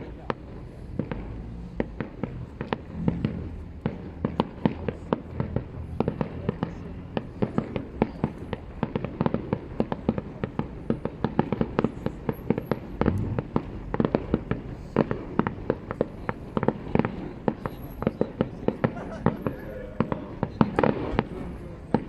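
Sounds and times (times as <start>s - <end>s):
deep firework boom: 12.8s - 14.6s
low rumble: 13.0s - 14.0s.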